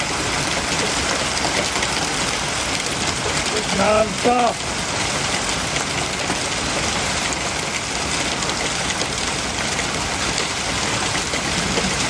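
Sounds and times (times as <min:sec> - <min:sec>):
hail and heavy rain: 0:00.0 - 0:12.0.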